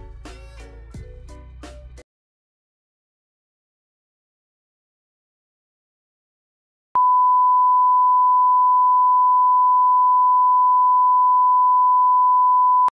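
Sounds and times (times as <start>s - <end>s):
steady electronic test tone: 7.0s - 12.9s.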